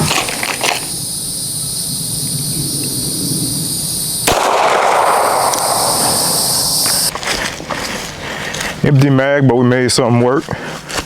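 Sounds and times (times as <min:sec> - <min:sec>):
insects buzzing: 0:00.0 - 0:08.9
rushing noise: 0:02.2 - 0:07.1
sharp crack: 0:04.2 - 0:07.4.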